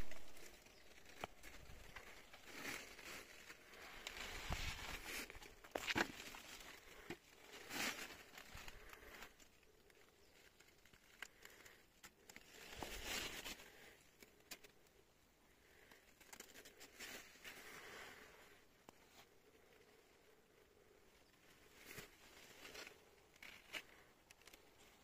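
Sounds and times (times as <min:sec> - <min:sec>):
faint rustling and crinkling: 0:00.0 - 0:25.0.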